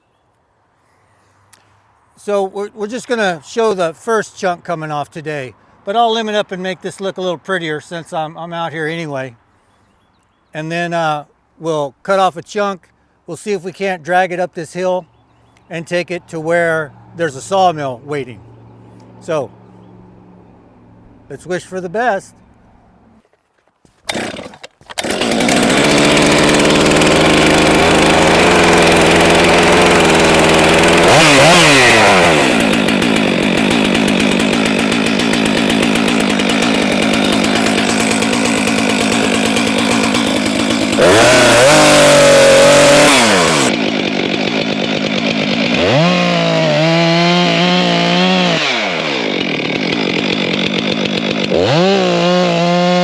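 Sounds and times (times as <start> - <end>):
chainsaw idling and revving: 23.9 - 53.0.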